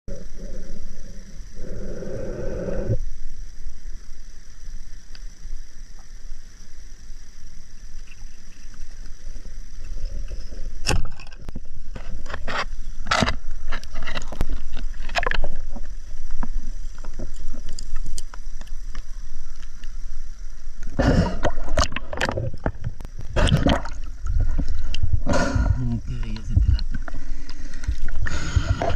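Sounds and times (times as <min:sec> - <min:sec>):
water splashing and sloshing: 0:08.2 - 0:19.7, 0:20.8 - 0:28.9.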